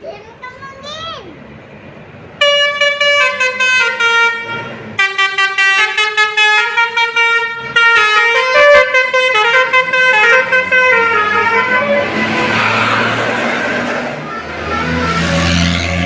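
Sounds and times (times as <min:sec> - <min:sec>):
multi-tone air horn melody: 0:02.4 - 0:12.5.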